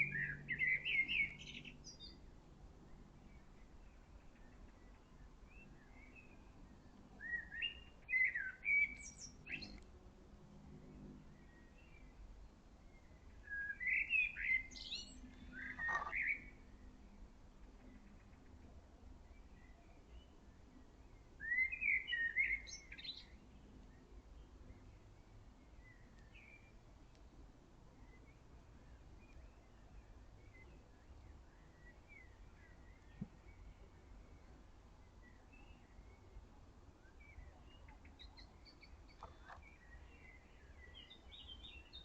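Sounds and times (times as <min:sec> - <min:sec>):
faint forest background noise: 0:00.0 - 0:42.0
songbird singing: 0:00.0 - 0:42.0
faint bird calls: 0:13.1 - 0:16.9, 0:37.0 - 0:42.0
songbird warbling: 0:13.4 - 0:16.6, 0:37.3 - 0:42.0.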